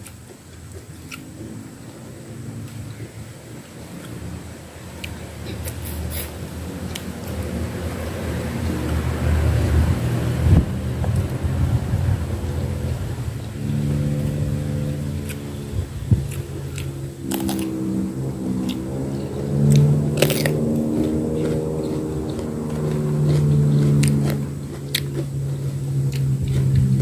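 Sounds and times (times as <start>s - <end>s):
eating bites and crunches: 0.0s - 1.4s, 16.2s - 17.8s, 18.6s - 27.0s
steady low drone: 0.6s - 27.0s.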